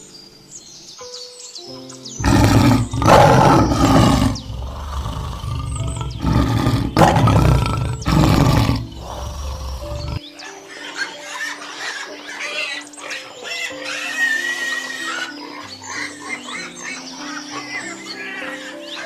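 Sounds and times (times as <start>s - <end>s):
large animal deep rough calls: 2.2s - 10.2s.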